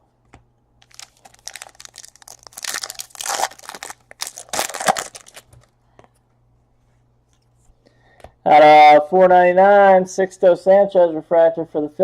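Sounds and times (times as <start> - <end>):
card pack wrappers crinkling: 0.8 - 5.7.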